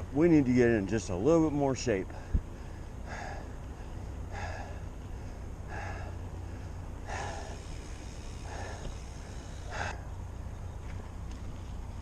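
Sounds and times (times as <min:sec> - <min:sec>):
steady low rumble: 0:00.0 - 0:12.0
man breathing hard: 0:02.1 - 0:10.0.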